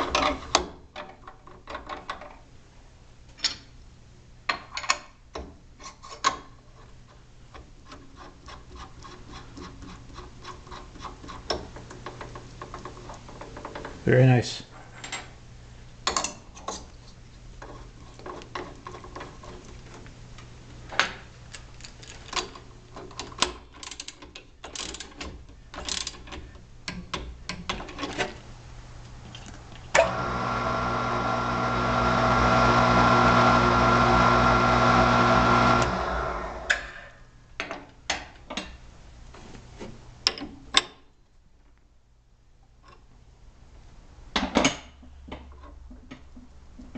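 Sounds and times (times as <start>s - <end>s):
metal clicks and clanks: 21.5s - 28.4s
mill spindle motor running: 30.0s - 36.8s.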